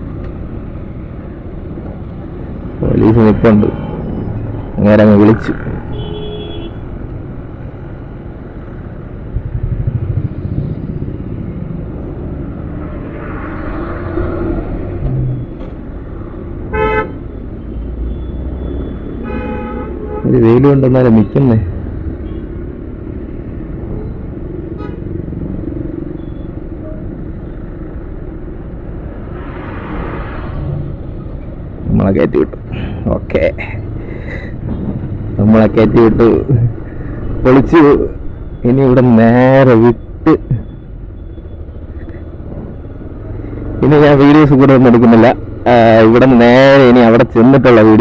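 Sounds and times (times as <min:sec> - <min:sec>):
motorcycle engine rumbling: 0:01.9 - 0:12.9
motorcycle engine running: 0:09.3 - 0:11.1.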